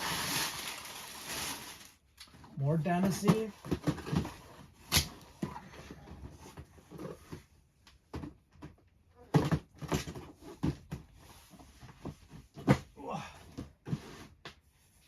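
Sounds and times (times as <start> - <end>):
cardboard boxes knocking and scraping: 2.8 - 14.6.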